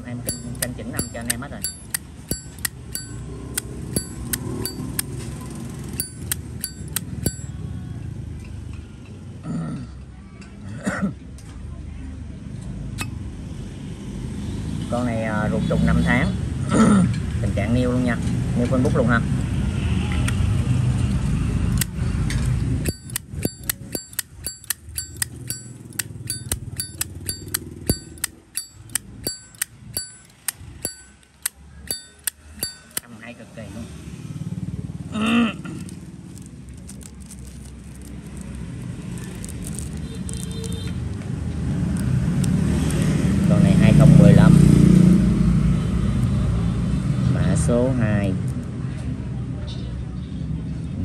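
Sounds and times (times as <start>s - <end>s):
lighter lid clicking open and shut: 22.9s - 30.2s.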